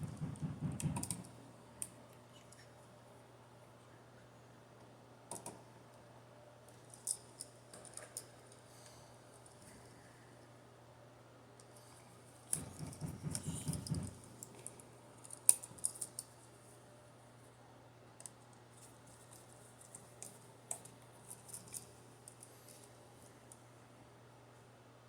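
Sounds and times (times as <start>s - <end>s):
tools and wire clicking: 12.5s - 16.4s.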